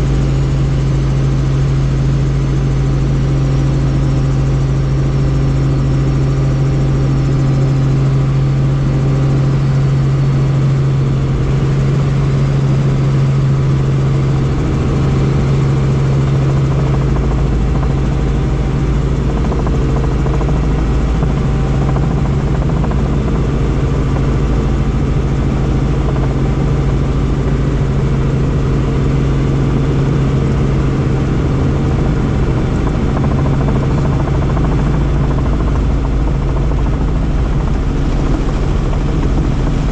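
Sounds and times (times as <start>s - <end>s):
helicopter rotor and engine: 0.0s - 39.9s.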